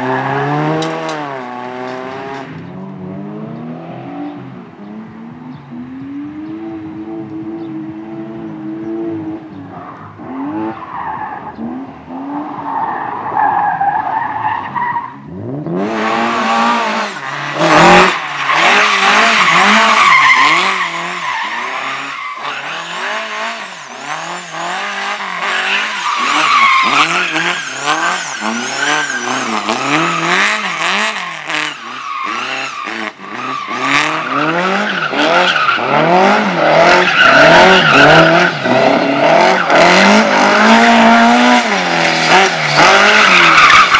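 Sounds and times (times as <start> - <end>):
race car engine revving: 0.0 - 43.9
tyres squealing and skidding: 9.5 - 43.9.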